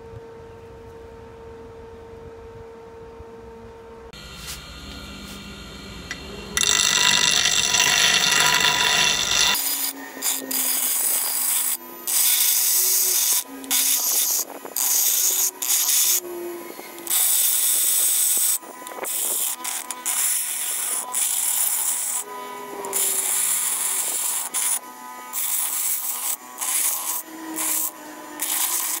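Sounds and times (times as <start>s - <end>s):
metal tool rasping against iron: 6.1s - 16.2s, 16.9s - 29.0s.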